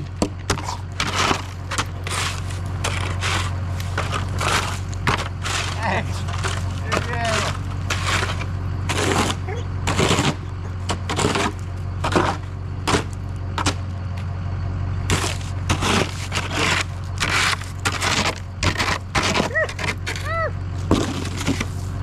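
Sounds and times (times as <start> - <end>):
diesel engine running: 0.0 - 22.0
sand scraping on ice: 0.5 - 10.4, 15.1 - 22.0.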